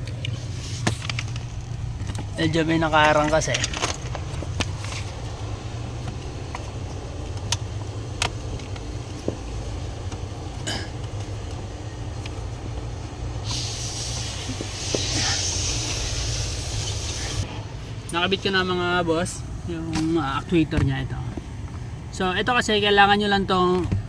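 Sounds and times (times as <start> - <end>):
steady low hum: 0.0 - 22.2
steady hiss: 13.1 - 17.5.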